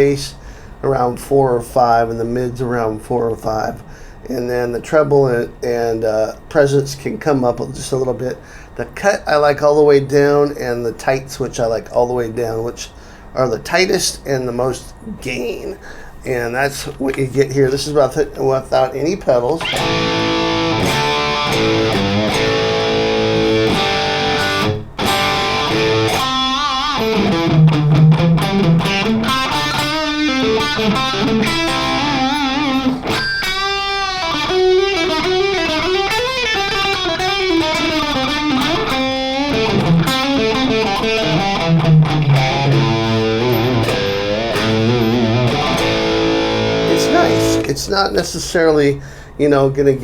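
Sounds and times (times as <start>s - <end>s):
crunchy electric guitar riffs: 19.6s - 47.7s.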